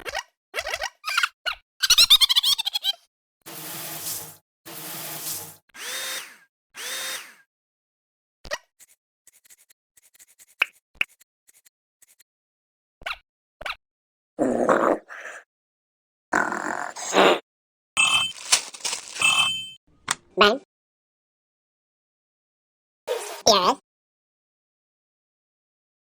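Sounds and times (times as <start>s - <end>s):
cartoon drill-like buzzing: 3.5s - 7.5s.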